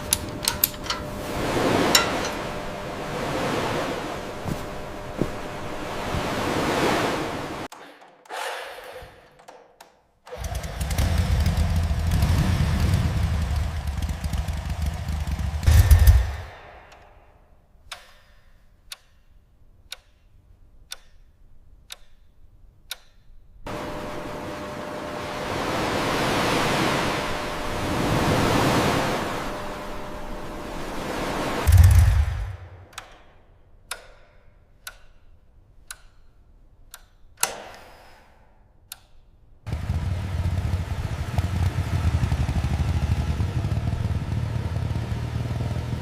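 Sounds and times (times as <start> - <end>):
clock ticking: 17.9 - 23.4, 33.9 - 35.2, 35.8 - 37.6.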